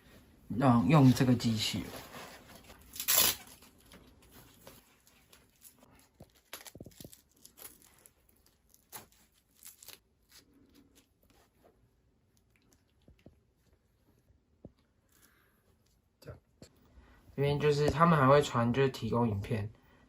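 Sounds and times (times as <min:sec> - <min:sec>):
strap ripping: 0:02.0 - 0:11.7.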